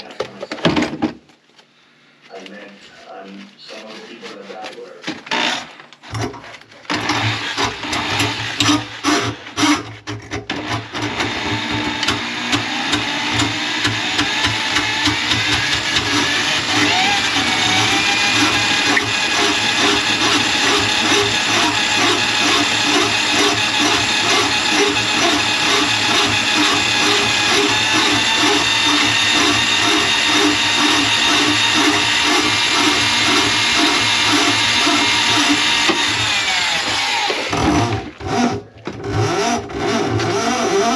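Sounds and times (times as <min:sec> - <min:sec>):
drain snake motor whine: 0:11.0 - 0:38.6.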